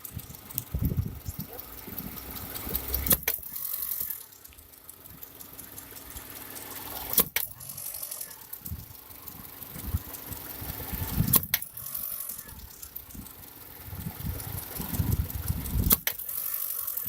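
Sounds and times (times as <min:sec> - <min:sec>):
car engine revving: 0:00.4 - 0:11.4.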